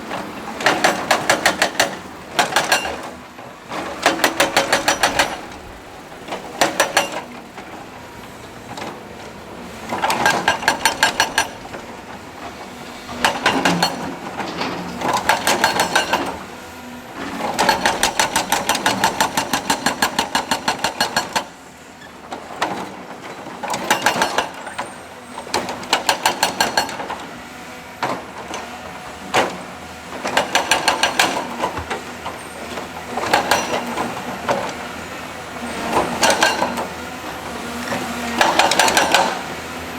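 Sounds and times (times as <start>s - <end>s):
rock breaker hammering: 3.9s - 5.6s.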